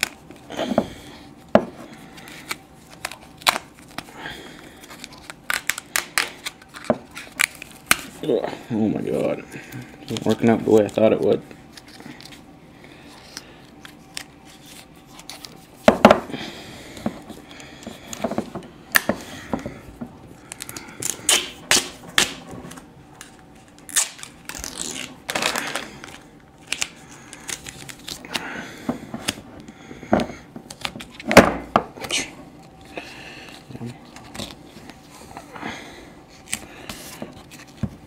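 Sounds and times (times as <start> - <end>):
duct tape ripping: 2.4 - 4.0, 20.4 - 22.4, 23.2 - 28.4.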